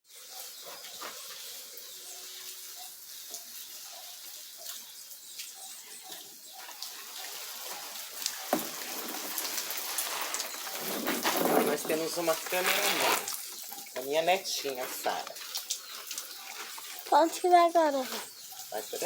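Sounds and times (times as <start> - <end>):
water splashing hiss: 6.7 - 19.0.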